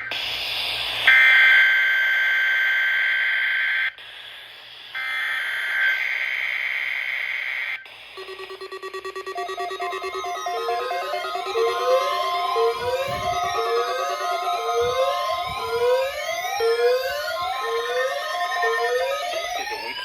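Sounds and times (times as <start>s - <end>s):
screechy digital data bursts: 8.0s - 20.0s
pulsing electronic beeping tone: 8.2s - 20.0s.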